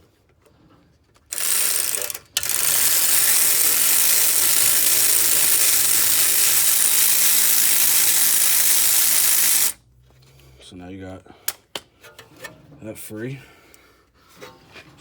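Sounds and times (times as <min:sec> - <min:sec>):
ratchet running: 0:01.3 - 0:09.8.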